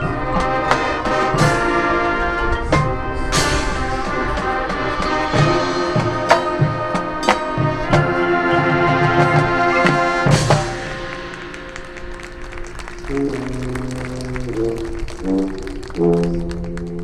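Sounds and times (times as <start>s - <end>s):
sharp percussion hits: 0.0s - 14.1s
brass section sustained chords: 0.0s - 17.0s.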